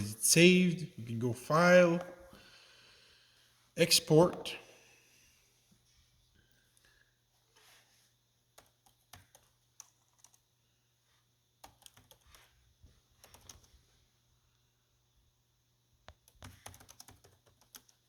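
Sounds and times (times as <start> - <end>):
faint typing on computer keyboard: 6.5 - 14.1, 16.0 - 18.0.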